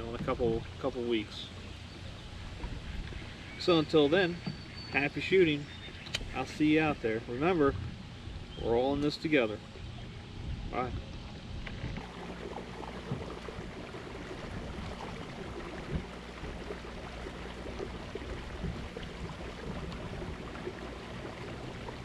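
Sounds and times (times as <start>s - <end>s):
knocks on a hull: 0.0s - 0.6s, 12.9s - 13.8s, 14.6s - 16.6s, 17.7s - 20.6s
water lapping against a hull: 0.0s - 22.0s.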